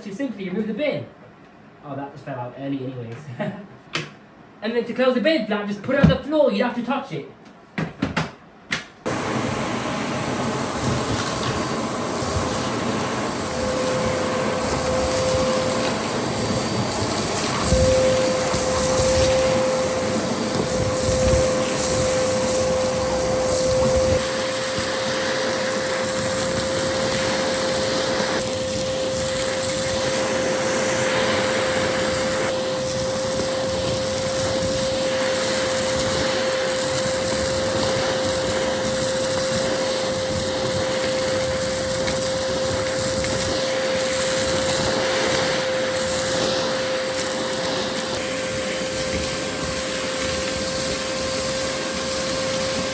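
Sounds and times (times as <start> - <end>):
vacuum airflow rushing: 9.0 - 52.9
vacuum cleaner motor whine: 9.0 - 52.9.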